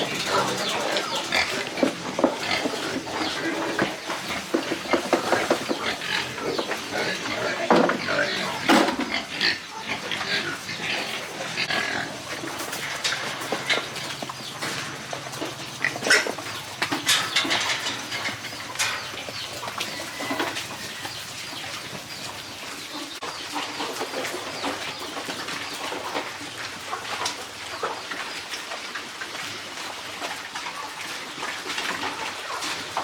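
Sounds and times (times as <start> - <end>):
farm animals calling: 0.0 - 28.9
sharp knocks and clatter: 0.1 - 6.8, 12.6 - 20.7.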